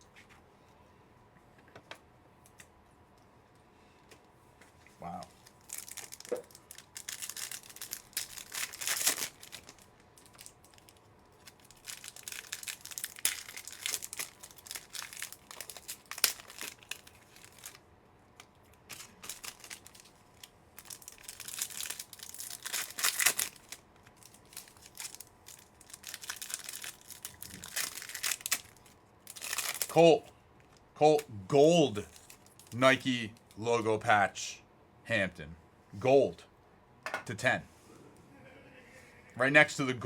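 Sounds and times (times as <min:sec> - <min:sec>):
wrappers tearing and crinkling: 0:05.2 - 0:30.0, 0:32.0 - 0:33.6.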